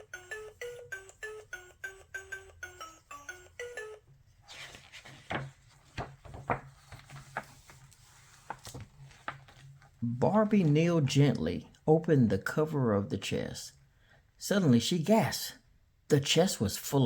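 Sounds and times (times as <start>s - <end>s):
electronic toy jingle: 0.0s - 4.1s.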